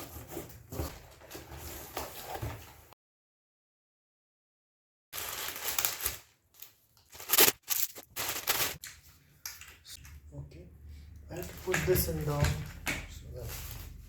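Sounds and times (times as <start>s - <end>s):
packaging rustling: 5.2s - 8.8s.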